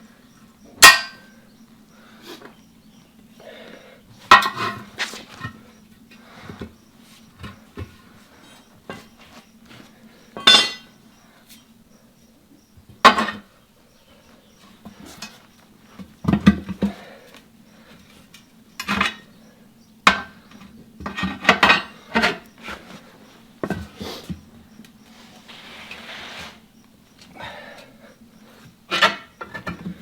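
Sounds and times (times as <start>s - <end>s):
tire irons clanking on metal rim: 0.8s - 1.4s, 4.3s - 5.6s, 10.4s - 11.0s, 20.1s - 22.7s, 28.9s - 30.0s
soft rustling hiss: 22.1s - 28.9s.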